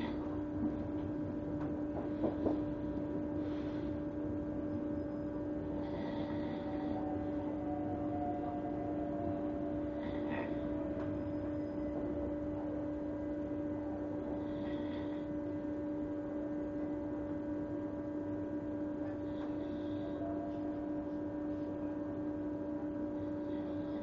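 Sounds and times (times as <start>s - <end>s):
train carriage electric hum: 0.0s - 24.0s
man snoring: 10.0s - 10.8s.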